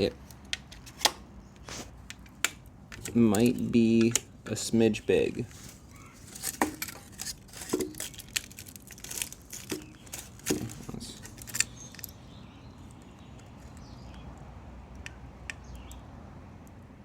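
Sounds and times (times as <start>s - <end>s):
faint handling: 0.7s - 12.2s
plastic parts clicking and knocking: 2.1s - 4.3s, 6.3s - 12.2s.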